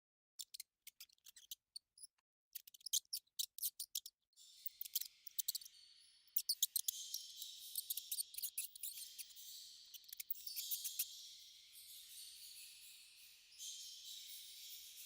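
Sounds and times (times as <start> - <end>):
rats squeaking: 0.4 - 11.3.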